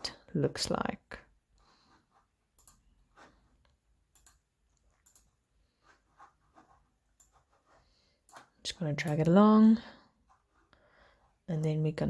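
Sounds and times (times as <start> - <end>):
faint clicks: 2.6 - 2.8, 4.1 - 4.4, 5.0 - 5.3.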